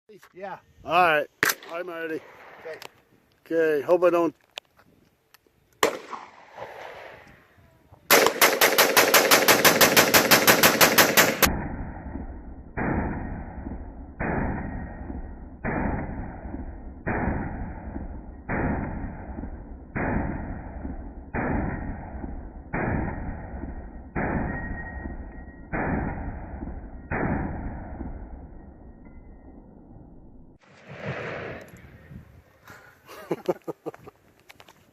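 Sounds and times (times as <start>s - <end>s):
rifle firing rapid shots: 5.8s - 7.2s, 8.1s - 11.5s, 15.6s - 24.6s.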